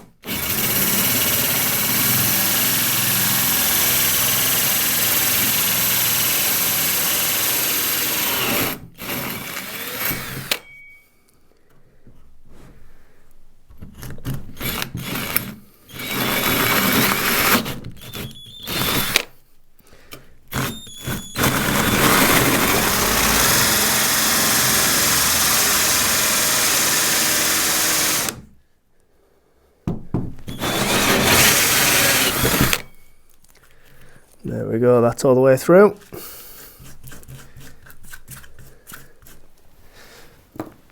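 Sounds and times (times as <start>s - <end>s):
power drill cutting through wood: 0.2s - 10.7s, 14.6s - 19.3s, 20.5s - 28.5s, 30.5s - 33.1s.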